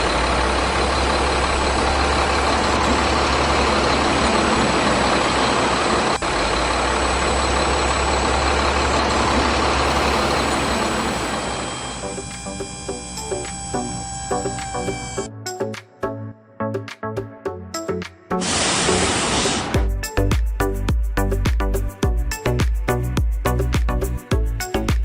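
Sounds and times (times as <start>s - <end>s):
heavy vehicle engine running: 0.0s - 15.3s, 18.4s - 20.0s
music: 11.0s - 25.0s.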